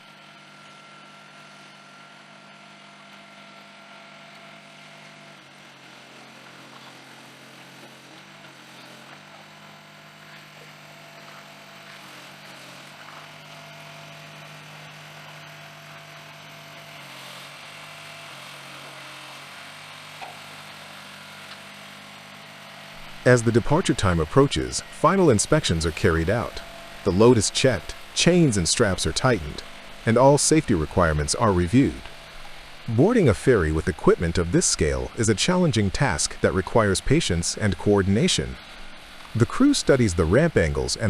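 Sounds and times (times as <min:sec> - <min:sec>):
low hum shifting in pitch: 0:23.0 - 0:41.0.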